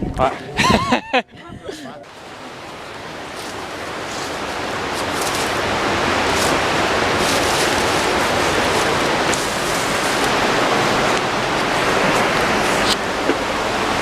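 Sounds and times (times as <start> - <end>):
rushing river water: 1.8 - 14.0.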